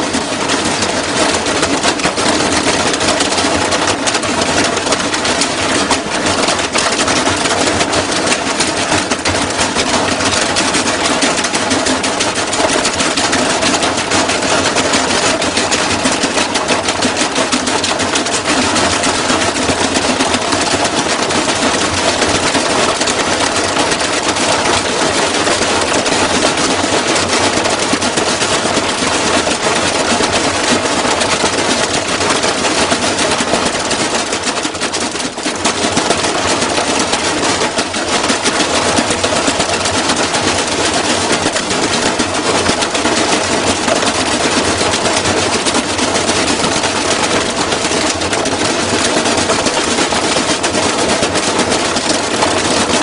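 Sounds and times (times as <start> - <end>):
washing machine rattling and banging: 0.0 - 53.0.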